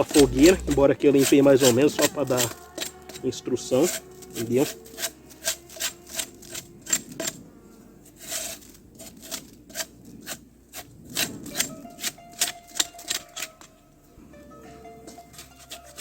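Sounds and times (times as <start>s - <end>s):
rustling scrapes: 0.0s - 13.8s, 15.0s - 16.0s
sticks cracking and breaking: 11.5s - 13.7s.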